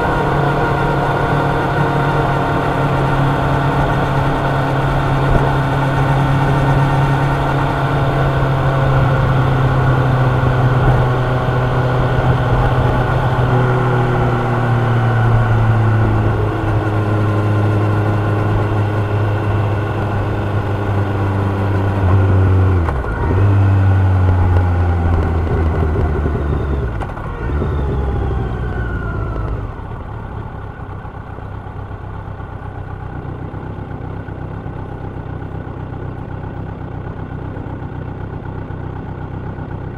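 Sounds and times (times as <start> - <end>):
motorcycle engine winding down: 0.0 - 30.8.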